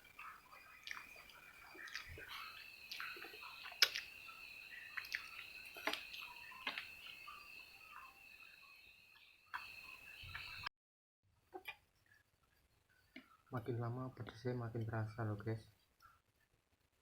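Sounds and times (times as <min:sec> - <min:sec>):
chewing and mouth clicks: 0:00.2 - 0:07.4.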